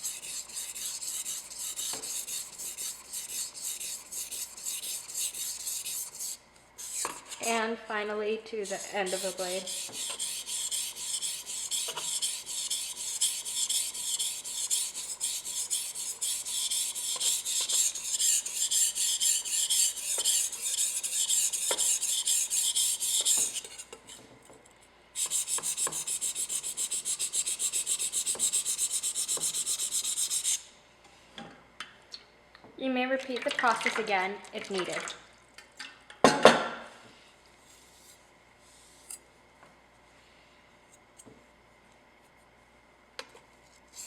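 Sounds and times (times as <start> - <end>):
knife scraping on whetstone: 0.0 - 7.6, 8.6 - 24.2, 25.2 - 30.6.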